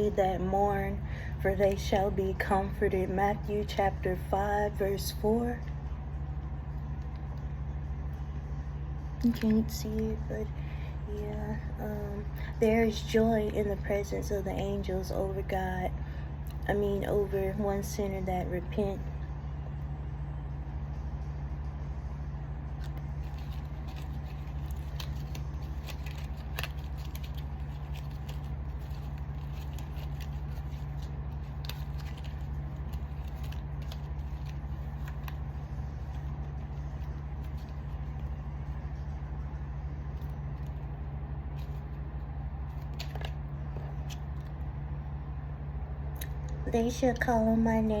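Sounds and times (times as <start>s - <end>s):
vehicle engine hum: 0.0s - 48.0s
clicks and rustles of handling: 22.8s - 38.8s, 42.6s - 44.6s.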